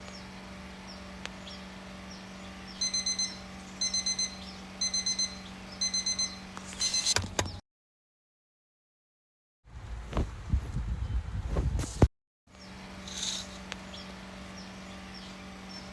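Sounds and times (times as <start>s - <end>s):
steady low hum: 0.0s - 7.6s, 9.7s - 15.9s
digital alarm clock beeping: 2.8s - 7.2s.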